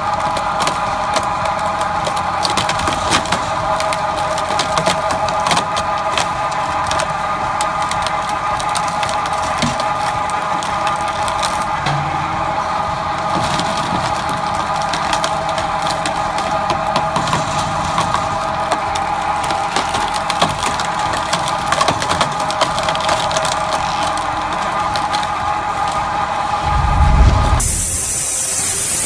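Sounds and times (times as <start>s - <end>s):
wood cracking and splintering: 0.0s - 26.4s
machine whining: 6.2s - 19.3s, 25.6s - 29.0s.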